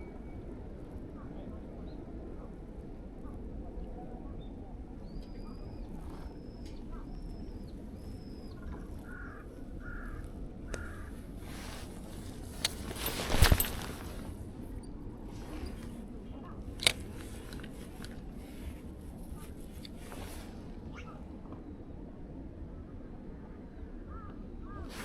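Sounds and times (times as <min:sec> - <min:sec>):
birds calling: 0:05.1 - 0:14.2.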